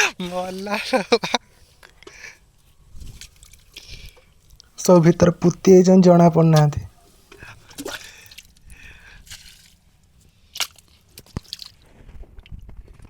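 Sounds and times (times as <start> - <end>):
mud squelching and dripping: 0.0 - 2.3, 2.9 - 4.8, 6.6 - 12.0.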